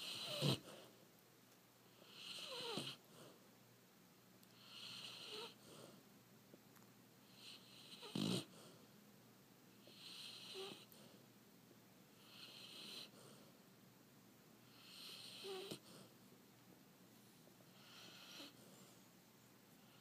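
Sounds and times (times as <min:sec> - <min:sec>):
faint snoring: 0:00.0 - 0:00.9, 0:02.0 - 0:03.3, 0:04.6 - 0:06.0, 0:07.3 - 0:08.8, 0:09.8 - 0:11.0, 0:12.2 - 0:13.4, 0:14.7 - 0:16.1, 0:17.7 - 0:18.9.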